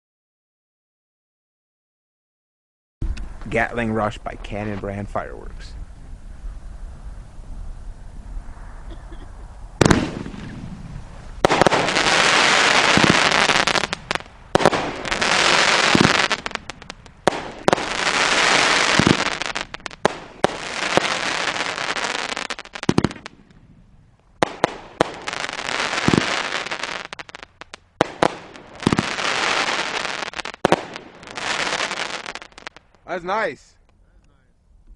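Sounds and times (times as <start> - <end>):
firework crackling volleys: 6.7 - 23.7, 24.4 - 33.2
deep firework bangs: 9.8 - 33.1.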